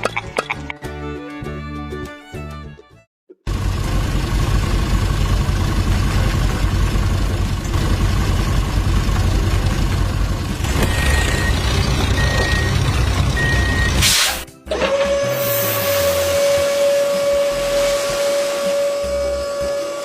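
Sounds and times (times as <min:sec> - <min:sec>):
heavy truck engine running: 0:03.4 - 0:20.0
reversing beeps: 0:10.7 - 0:14.0
burst of hiss: 0:14.0 - 0:14.5, 0:15.4 - 0:19.7.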